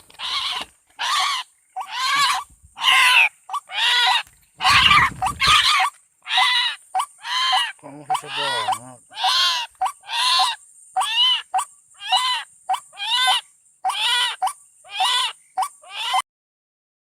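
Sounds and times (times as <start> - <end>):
waterbird nasal calls: 0.2 - 11.1.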